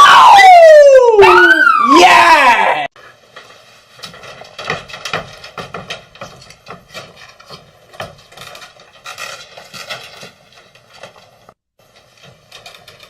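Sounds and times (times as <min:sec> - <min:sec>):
scraping: 0:03.0 - 0:13.0.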